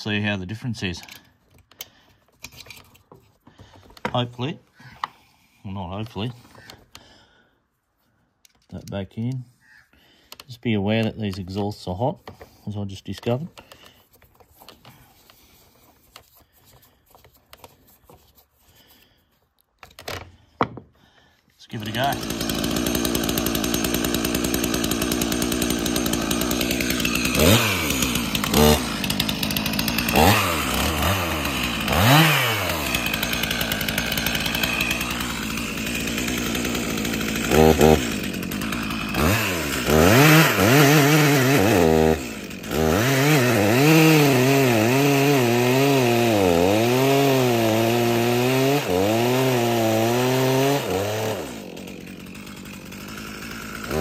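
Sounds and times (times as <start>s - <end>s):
chainsaw engine revving: 21.7s - 54.0s.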